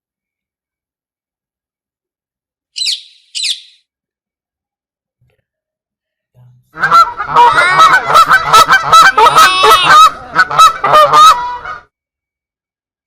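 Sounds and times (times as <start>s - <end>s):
flock of birds calling harshly: 6.8s - 11.7s.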